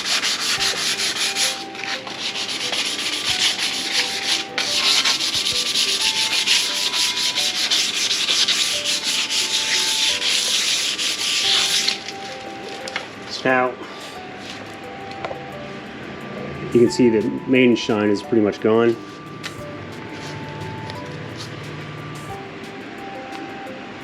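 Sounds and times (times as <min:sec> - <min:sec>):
sandpaper rasping on metal: 0:00.0 - 0:12.1.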